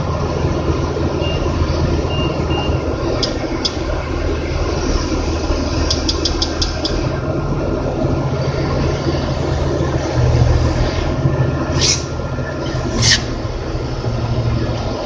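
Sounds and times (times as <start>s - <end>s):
crane engine running: 0.0s - 15.0s
sharp ticks: 5.9s - 7.0s.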